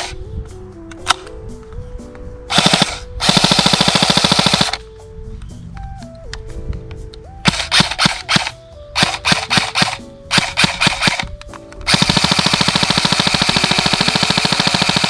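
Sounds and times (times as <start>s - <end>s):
airsoft gun rapid firing: 2.5s - 4.8s, 7.4s - 11.3s, 11.9s - 15.0s.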